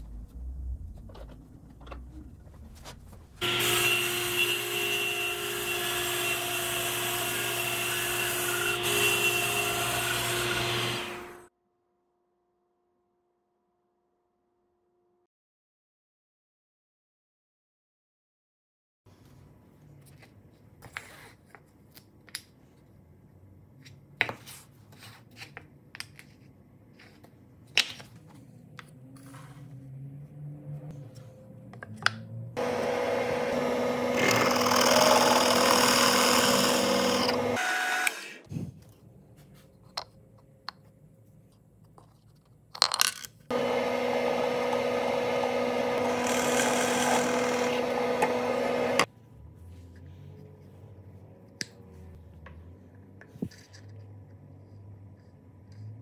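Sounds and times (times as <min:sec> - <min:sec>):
power tool whining: 0:03.4 - 0:11.5, 0:32.6 - 0:38.5, 0:43.5 - 0:49.1.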